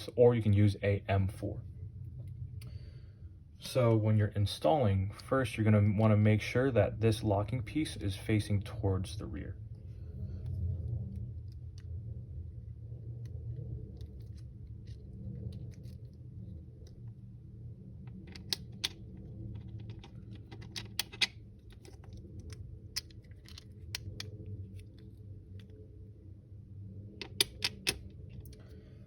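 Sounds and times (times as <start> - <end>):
low steady hum: 0.0 - 29.0
small metal clicks and taps: 18.1 - 24.4, 27.2 - 28.6.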